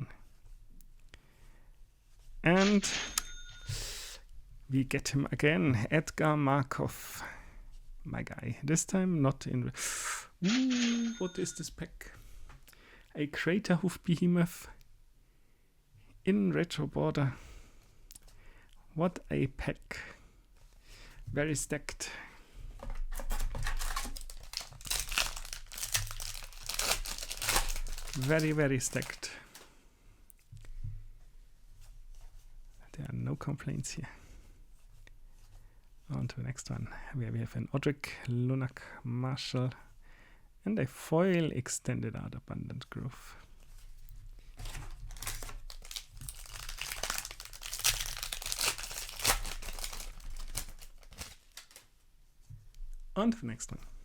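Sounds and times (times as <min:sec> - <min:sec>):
plastic packaging crinkling: 0:23.1 - 0:29.7, 0:44.6 - 0:52.0.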